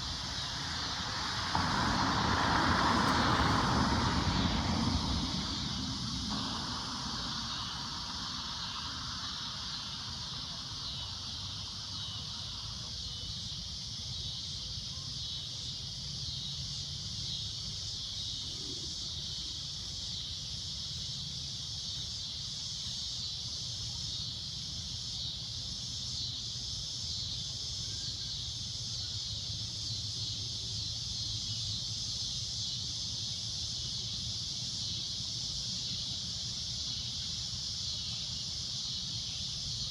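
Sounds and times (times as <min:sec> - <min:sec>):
faint engine-like sound: 0:00.0 - 0:13.7
cicadas droning: 0:00.0 - 0:39.9.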